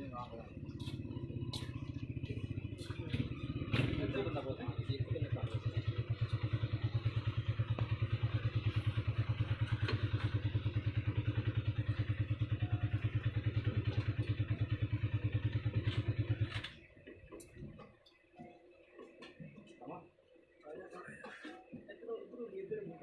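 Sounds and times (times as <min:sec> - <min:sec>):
stationary diesel engine running: 0:00.0 - 0:17.7.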